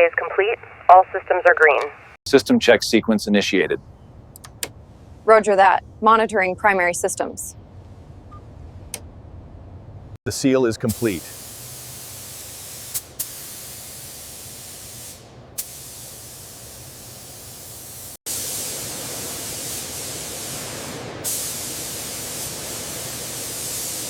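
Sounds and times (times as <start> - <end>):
spray gun hissing: 10.8 - 24.0.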